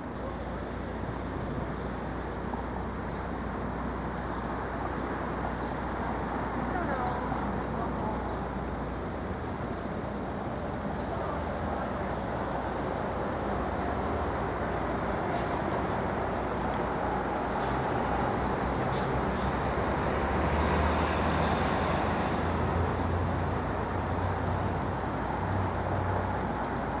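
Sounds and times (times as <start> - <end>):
passing vehicles rumble: 0.5 - 27.0.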